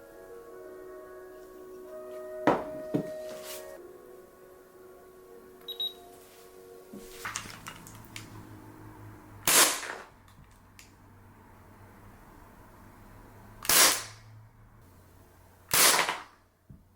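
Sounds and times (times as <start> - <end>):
background music: 0.0 - 9.4
airsoft pistol shot: 13.7 - 14.1, 15.7 - 16.3.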